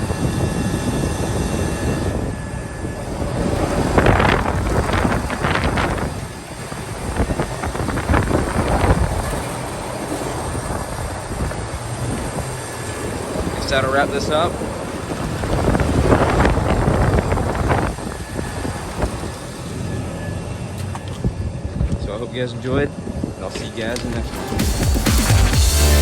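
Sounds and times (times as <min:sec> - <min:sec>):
rushing air surges: 0:00.0 - 0:20.8
air conditioning units whirring: 0:00.0 - 0:26.0.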